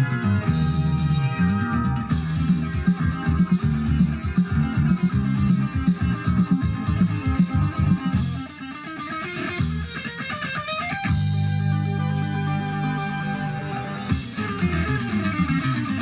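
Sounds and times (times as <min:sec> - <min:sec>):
guitar rock music over loudspeakers: 0:00.0 - 0:16.0.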